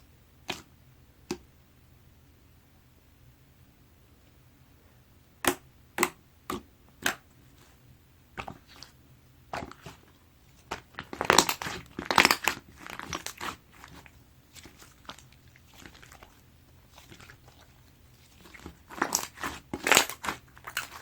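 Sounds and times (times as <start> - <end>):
slime popping and squishing: 9.5 - 21.0.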